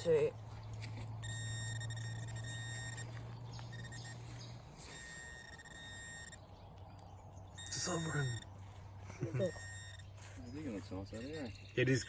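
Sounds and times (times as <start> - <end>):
metal detector tone: 0.9 - 6.5, 7.5 - 8.6, 9.2 - 12.0.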